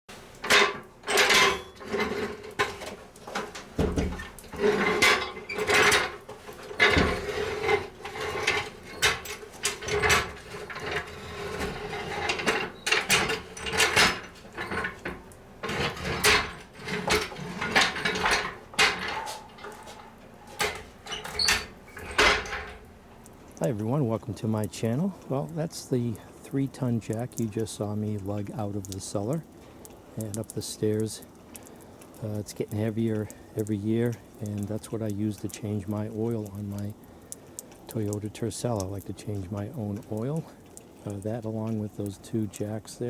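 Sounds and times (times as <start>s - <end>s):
floor jack clunking and rattling: 0.4s - 22.8s.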